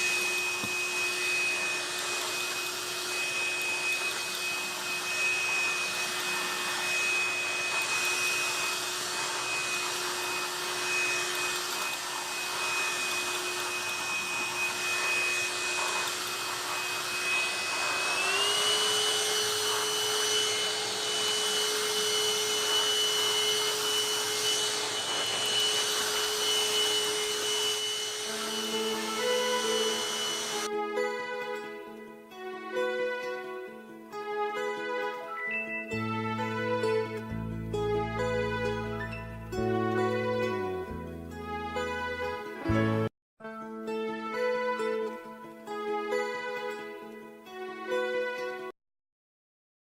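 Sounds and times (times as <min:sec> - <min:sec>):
stick vacuum motor whine: 0:00.0 - 0:30.7.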